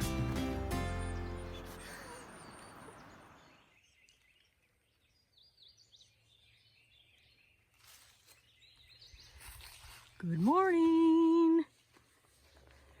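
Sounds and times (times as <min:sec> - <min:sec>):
music: 0:00.0 - 0:01.8
birdsong chirps and whistles: 0:00.8 - 0:10.2.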